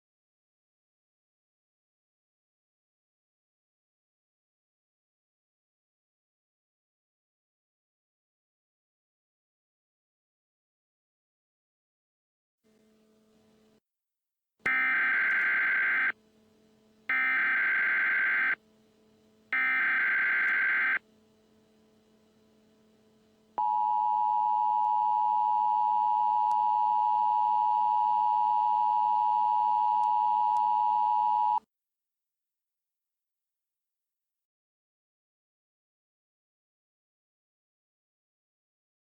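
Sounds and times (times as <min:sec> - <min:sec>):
two-tone attention signal: 0:14.7 - 0:16.2, 0:17.1 - 0:18.6, 0:19.6 - 0:21.0
digital data bursts: 0:17.1 - 0:18.6, 0:19.6 - 0:21.0.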